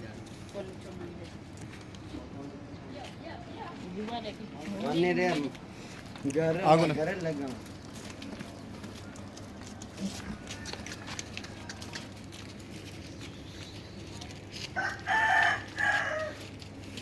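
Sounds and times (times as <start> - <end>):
faint farmyard background: 0.0 - 17.0
rooster crowing: 10.2 - 12.2, 14.6 - 16.6.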